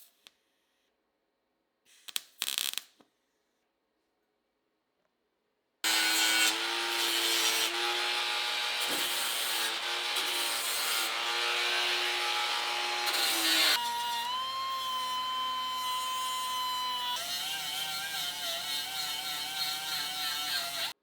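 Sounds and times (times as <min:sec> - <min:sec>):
power tool grinding metal: 0:05.8 - 0:21.0.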